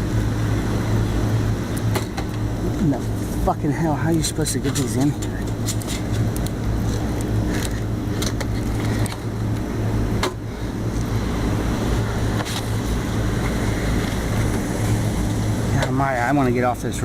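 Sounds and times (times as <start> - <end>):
air conditioner humming: 0.0 - 17.0
knocks and rustles of filters: 12.3 - 15.0.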